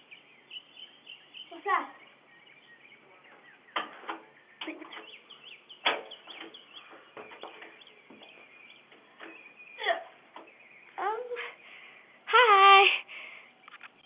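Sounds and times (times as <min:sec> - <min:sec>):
small birds chirping: 0:00.0 - 0:12.3, 0:13.1 - 0:14.0
sharp clicks or knocks: 0:05.8 - 0:06.6.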